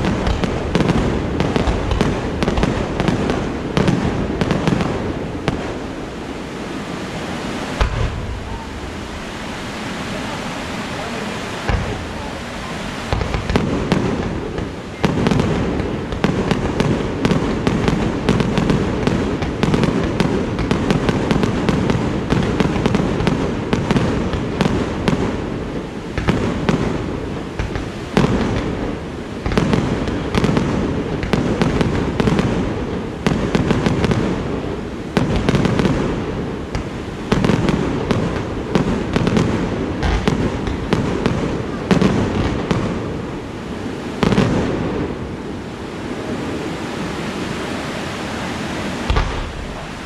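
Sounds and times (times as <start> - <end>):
firework shells bursting: 7.8 - 9.3, 49.1 - 50.0.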